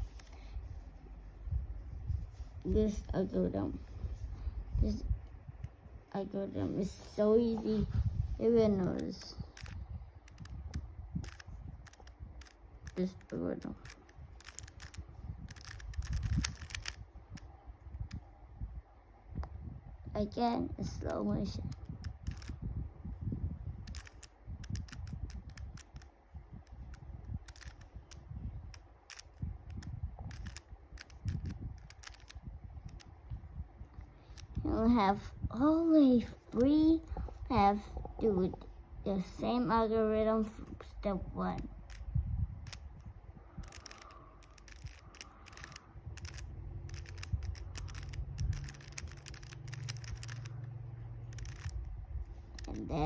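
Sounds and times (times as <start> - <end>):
plastic puzzle cube clicking: 0.0 - 0.4, 8.8 - 18.2, 21.6 - 22.6, 23.8 - 33.1, 41.6 - 52.8
low steady hum: 0.0 - 53.0
low handling rumble: 28.0 - 53.0.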